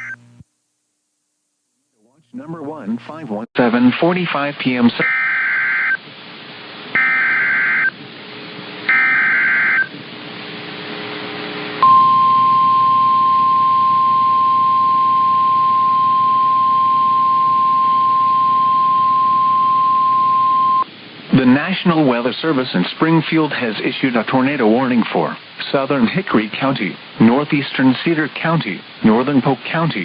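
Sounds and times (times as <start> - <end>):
radio static: 0.0 - 0.5, 1.9 - 5.2
loud warning alarm beep: 7.0 - 7.9, 8.9 - 9.9, 11.8 - 20.8.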